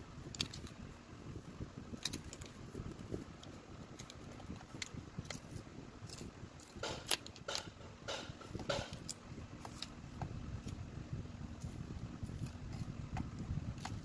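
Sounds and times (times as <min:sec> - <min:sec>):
low rumbling background: 0:00.0 - 0:14.0.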